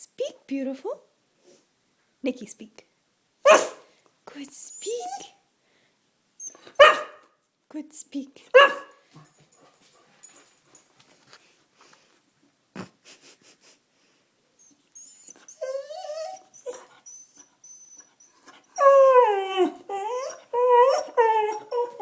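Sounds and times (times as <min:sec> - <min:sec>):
dog whining: 0:04.7 - 0:05.4, 0:06.4 - 0:07.0, 0:14.6 - 0:22.0.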